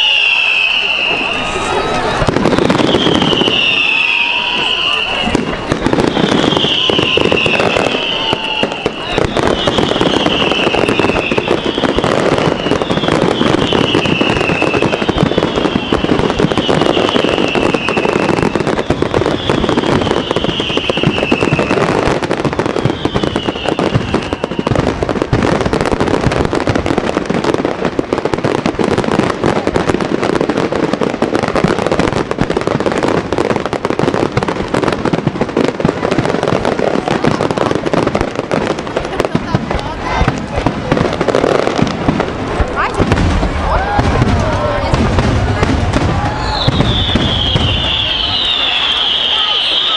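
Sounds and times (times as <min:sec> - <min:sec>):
falling firework whistles: 0:00.0 - 0:26.0, 0:43.4 - 0:49.9
fireworks crackling and banging: 0:00.0 - 0:49.9.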